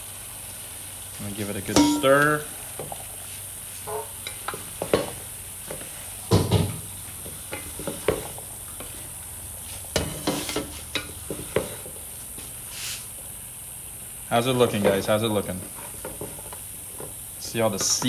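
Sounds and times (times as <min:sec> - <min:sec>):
frying sizzle: 0:00.0 - 0:18.0
utensil scraping and knocking pot: 0:01.7 - 0:02.6.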